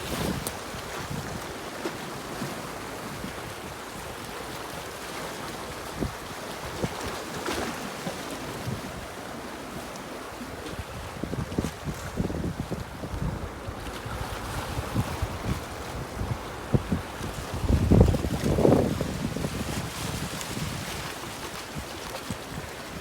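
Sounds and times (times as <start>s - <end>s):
wind rumbling on microphone: 0.0s - 1.6s, 10.6s - 23.0s
sea waves washing ashore: 0.0s - 23.0s.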